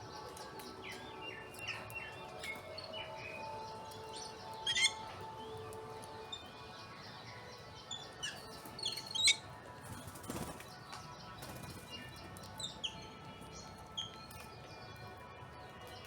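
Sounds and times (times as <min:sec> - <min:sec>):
birds chirping: 0:00.6 - 0:09.4.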